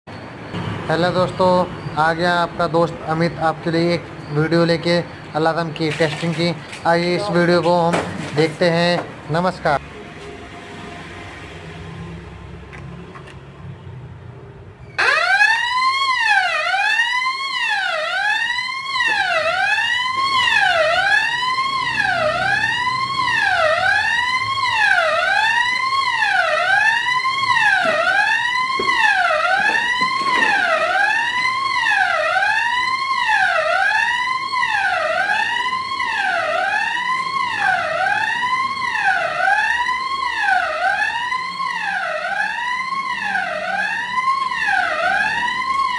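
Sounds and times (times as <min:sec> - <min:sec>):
fire alarm rising sweep tone: 0:15.0 - 0:45.9.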